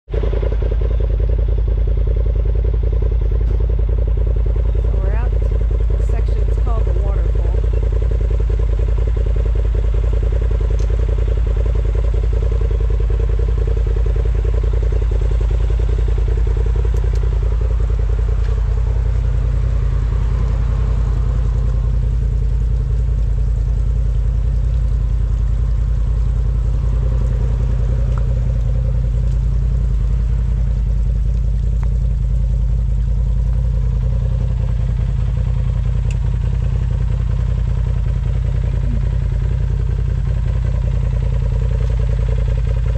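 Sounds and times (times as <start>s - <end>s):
off-road vehicle engine running: 0.0s - 42.9s.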